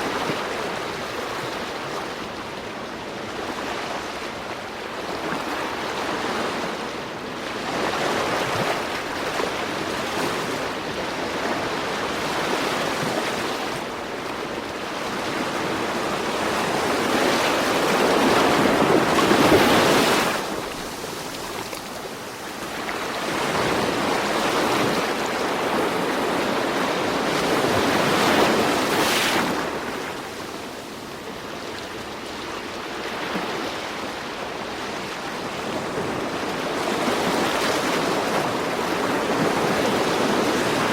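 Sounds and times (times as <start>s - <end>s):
ocean waves surging: 0.0s - 40.9s.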